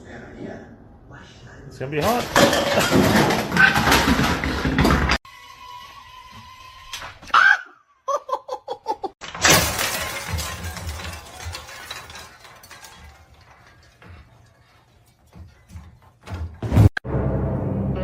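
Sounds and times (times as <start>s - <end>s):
crash of something shattering: 2.0s - 5.2s, 9.2s - 17.0s.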